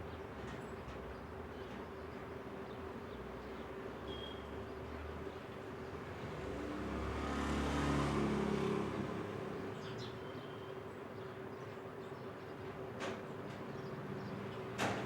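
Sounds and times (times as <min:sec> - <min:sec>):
motor vehicle passing: 0:06.4 - 0:09.8.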